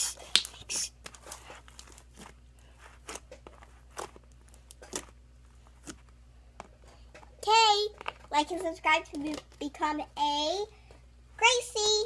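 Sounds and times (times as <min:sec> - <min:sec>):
sticky slime pops and crackles: 0:00.2 - 0:01.2, 0:03.0 - 0:05.2.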